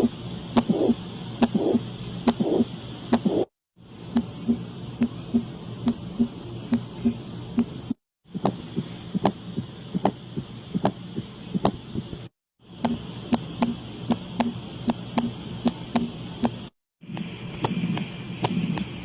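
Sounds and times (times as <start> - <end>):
heartbeat thuds: 4.2 - 12.2.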